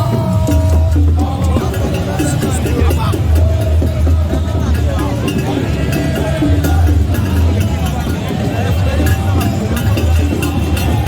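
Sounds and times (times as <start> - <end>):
loud music with heavy bass: 0.0 - 4.8.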